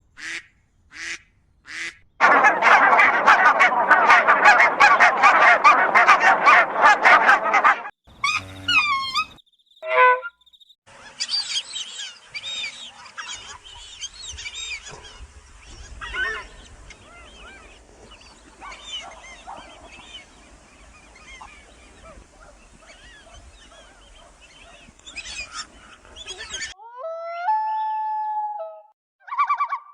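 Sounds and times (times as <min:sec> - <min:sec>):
geese honking: 0:01.0 - 0:10.3, 0:16.0 - 0:26.8.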